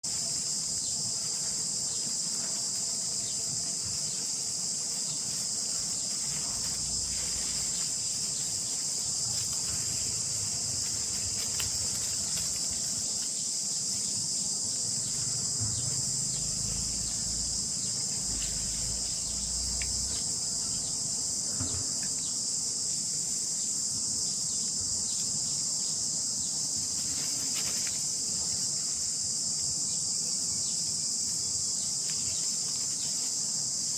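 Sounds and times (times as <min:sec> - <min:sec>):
high-pitched insect chorus: 0:00.0 - 0:33.9
faint low rumbling: 0:15.0 - 0:21.3.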